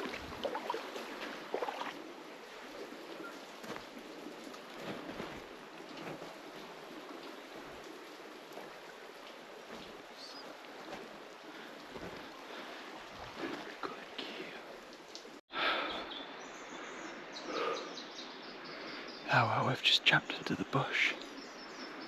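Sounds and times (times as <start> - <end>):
river flowing over stones: 0.0 - 15.0.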